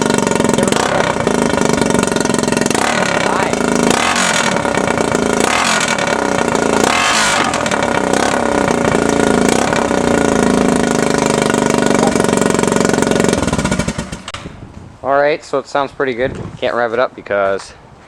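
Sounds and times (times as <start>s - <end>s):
engine idling through open exhaust: 0.0s - 14.4s.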